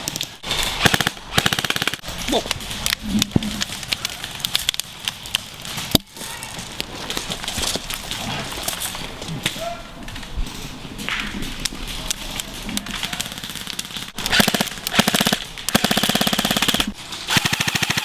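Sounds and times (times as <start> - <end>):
airsoft rifle automatic bursts: 0.0 - 2.1, 13.0 - 18.0.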